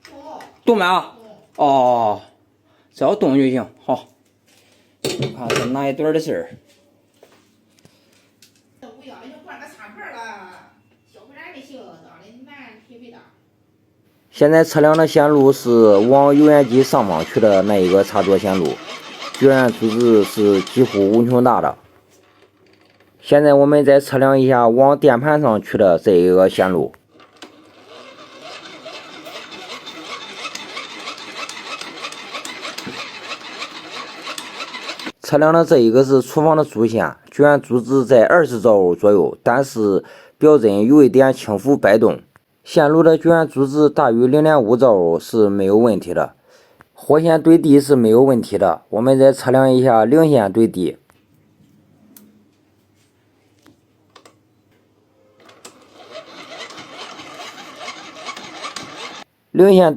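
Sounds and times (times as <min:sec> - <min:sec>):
hand-cranked generator whirring: 0:14.8 - 0:23.0, 0:27.1 - 0:35.2, 0:55.4 - 0:59.3
fine rapid clicking: 0:14.9 - 0:21.6, 0:27.2 - 0:35.2, 0:55.5 - 0:59.3.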